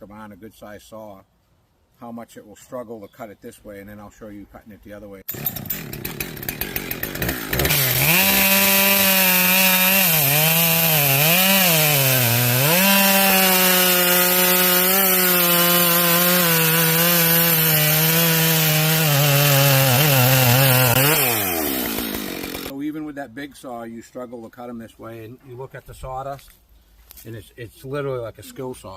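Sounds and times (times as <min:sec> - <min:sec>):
chainsaw cutting wood: 0:05.3 - 0:22.8.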